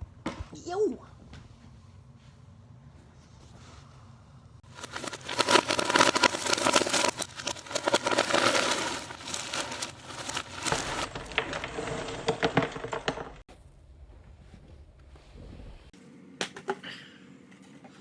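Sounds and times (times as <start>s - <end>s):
crackling crinkling handling noise: 4.6s - 13.4s.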